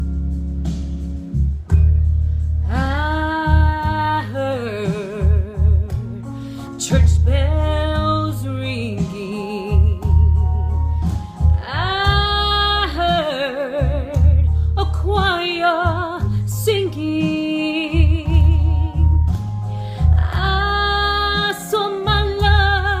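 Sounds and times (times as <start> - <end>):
bass-rich backing track: 0.0 - 23.0
woman singing wordlessly: 2.7 - 10.2, 11.6 - 19.0, 20.2 - 23.0.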